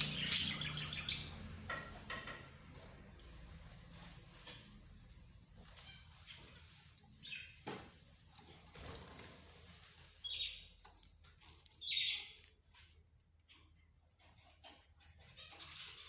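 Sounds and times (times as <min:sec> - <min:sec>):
shrill bird calls: 0:00.0 - 0:01.3
faint bird chirping: 0:00.0 - 0:02.2, 0:04.0 - 0:08.6, 0:09.5 - 0:16.0
light clicks and rustles: 0:01.3 - 0:16.0.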